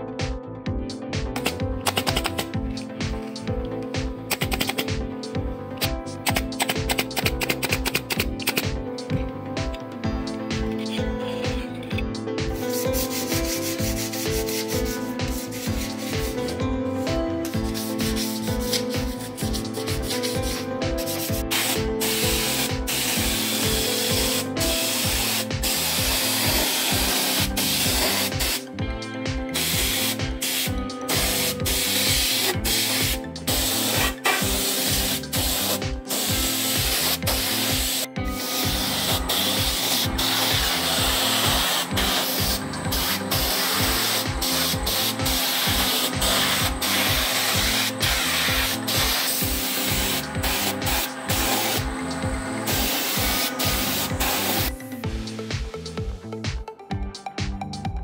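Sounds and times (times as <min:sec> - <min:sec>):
faint background music: 0:00.0 - 0:58.0
power sander on wood: 0:33.5 - 0:54.7.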